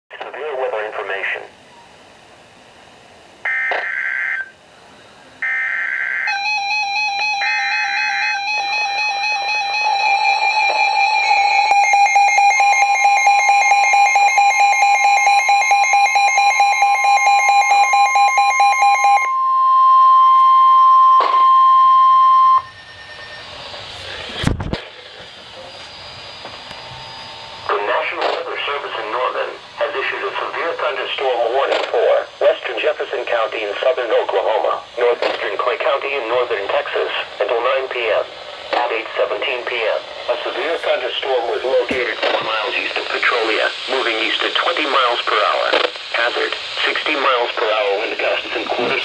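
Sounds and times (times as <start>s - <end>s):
steady warning tone: 3.4s - 4.6s, 5.4s - 49.0s
pulsing electronic alarm beep: 5.4s - 24.0s, 25.6s - 27.7s
low hiss: 25.0s - 49.0s.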